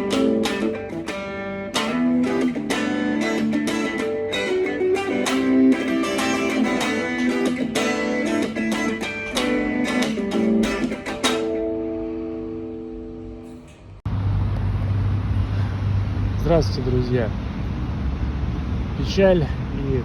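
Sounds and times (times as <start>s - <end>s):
fingerpicked solo guitar: 0.0s - 13.6s.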